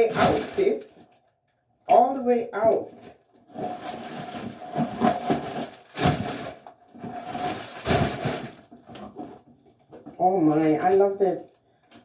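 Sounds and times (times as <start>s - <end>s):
rustling of packaging: 3.2s - 10.2s.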